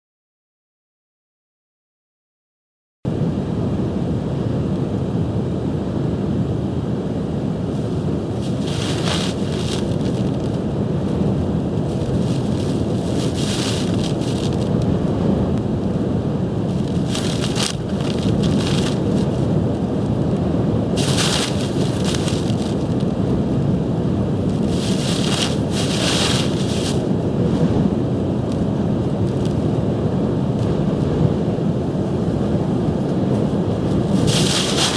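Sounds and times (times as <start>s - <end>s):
wind buffeting microphone: 3.1s - 34.9s
waves crashing on shore: 7.6s - 14.8s, 16.2s - 30.0s, 31.7s - 34.9s.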